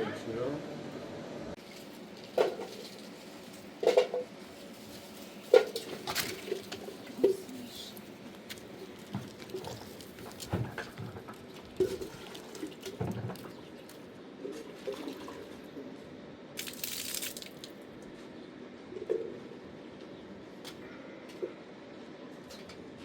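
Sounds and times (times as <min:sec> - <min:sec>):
water splashing and dripping: 0:16.6 - 0:17.8.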